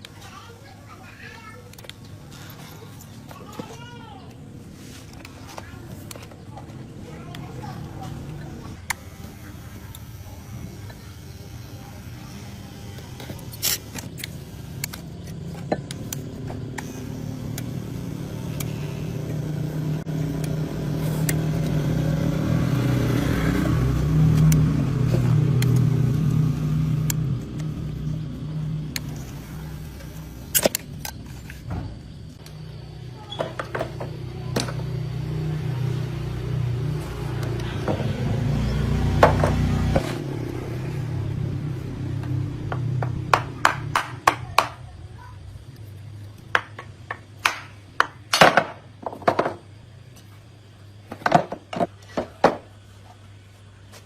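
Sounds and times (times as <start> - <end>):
engine running: 4.3 - 47.2.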